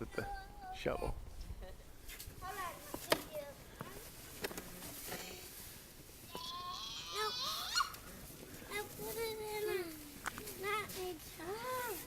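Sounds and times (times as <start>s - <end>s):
small child whining cry: 6.3s - 8.0s.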